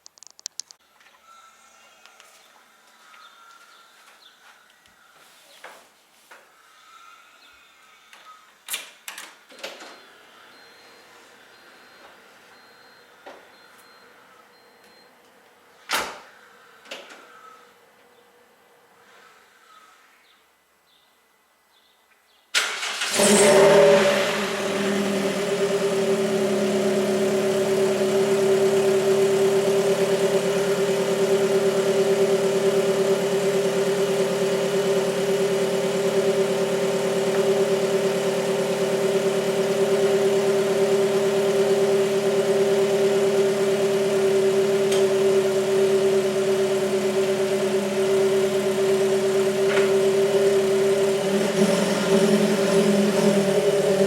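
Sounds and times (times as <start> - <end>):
car engine idling: 22.6 - 54.0.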